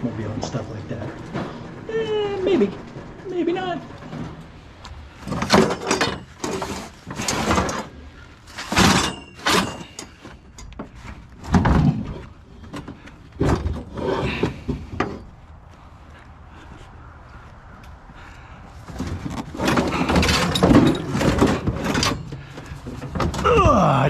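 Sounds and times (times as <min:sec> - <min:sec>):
scrap knocking and clattering: 0:03.8 - 0:15.3, 0:18.8 - 0:23.8.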